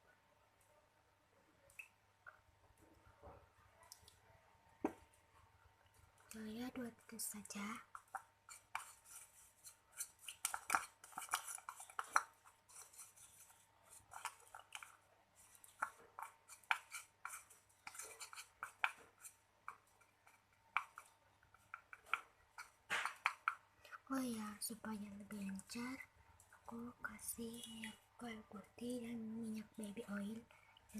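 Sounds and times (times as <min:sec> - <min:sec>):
utensil scraping a small container: 0:07.9 - 0:21.1.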